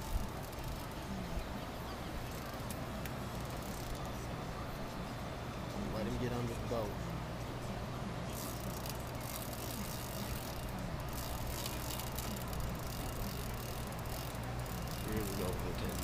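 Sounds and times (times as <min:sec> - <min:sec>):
fishing reel cranking and ratcheting: 0:00.0 - 0:01.0, 0:02.2 - 0:04.2, 0:08.3 - 0:16.0
steady low hum: 0:00.0 - 0:16.0.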